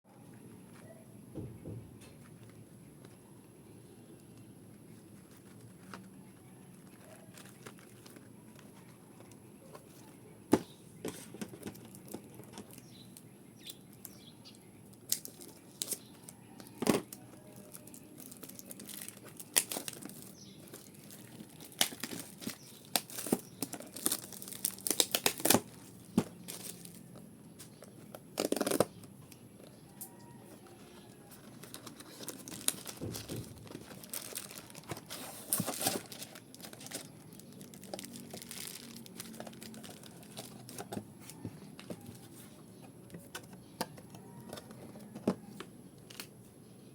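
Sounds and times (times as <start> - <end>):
plastic wrapping crinkling and tearing: 5.2 - 9.4, 15.1 - 27.2, 28.3 - 28.9, 31.0 - 42.3.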